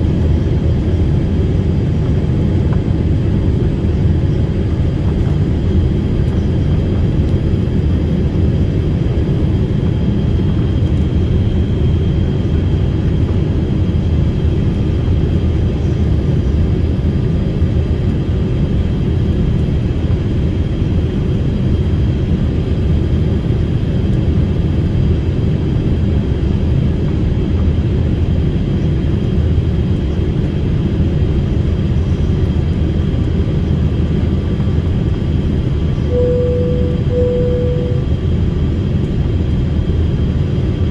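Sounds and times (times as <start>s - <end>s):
airliner cabin rumble: 0.0s - 40.9s
faint high whine: 35.9s - 38.2s.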